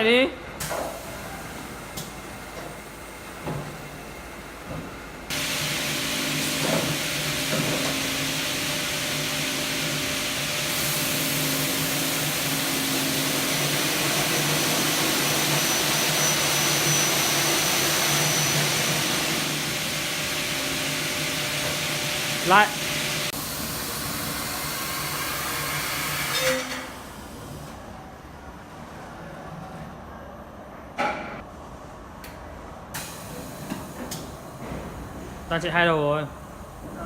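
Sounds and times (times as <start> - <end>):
cutting saw running: 5.3 - 23.3.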